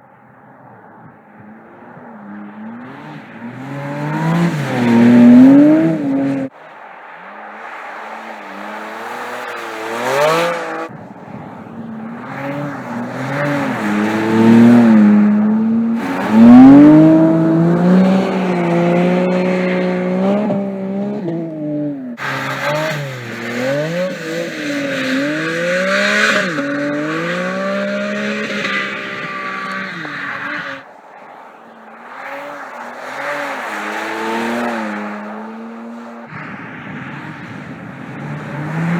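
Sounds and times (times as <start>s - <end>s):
car engine revving: 0.6s - 38.9s
tyres squealing: 12.5s - 30.8s.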